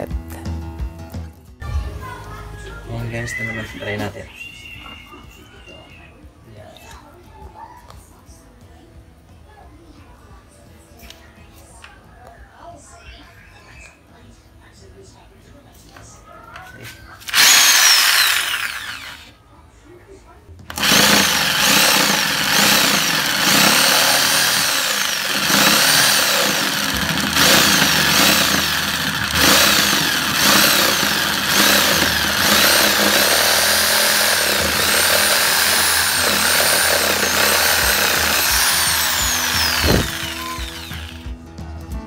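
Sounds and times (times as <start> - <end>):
jigsaw motor whining while sawing: 17.3 - 19.4, 20.6 - 41.3.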